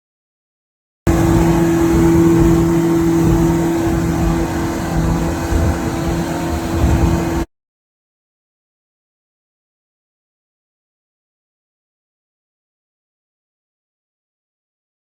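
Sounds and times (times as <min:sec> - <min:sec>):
outboard engine running: 0:01.1 - 0:07.5
rushing water noise: 0:01.1 - 0:07.5.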